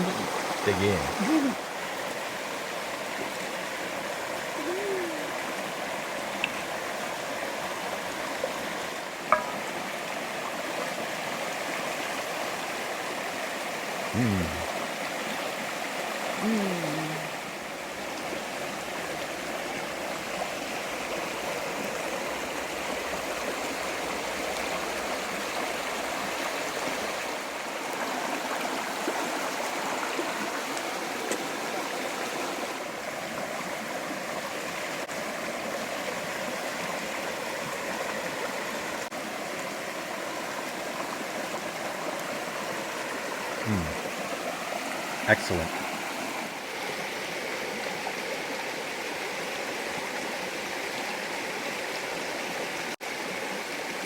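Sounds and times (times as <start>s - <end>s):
creek water running over rocks: 0.0s - 54.0s.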